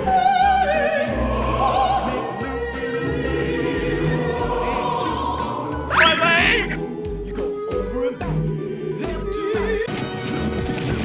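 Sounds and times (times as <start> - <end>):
choir singing: 0.0 - 7.3
operatic singing voice: 0.0 - 9.9.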